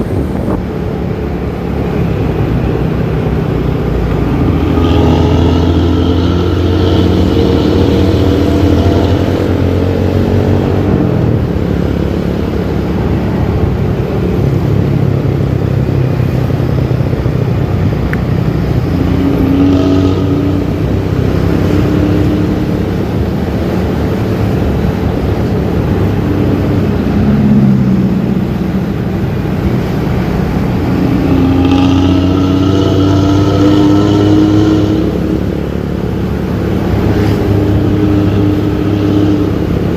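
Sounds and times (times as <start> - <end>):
bus diesel engine accelerating: 0.0 - 39.9
loud growling exhaust: 0.0 - 39.9.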